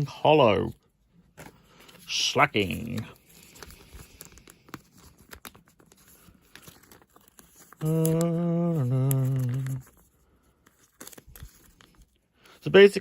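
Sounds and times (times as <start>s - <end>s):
trading cards rustling: 0.1s - 13.0s
person humming: 7.8s - 9.9s.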